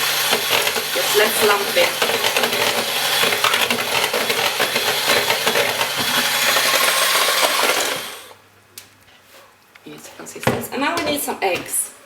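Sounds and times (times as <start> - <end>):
electric hand mixer whisking batter: 0.0 - 8.4.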